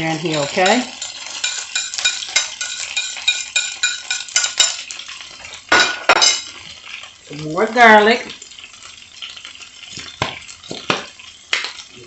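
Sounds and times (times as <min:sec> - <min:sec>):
metal utensil scraping a pan: 0:00.0 - 0:06.8
frying sizzle: 0:00.0 - 0:12.0.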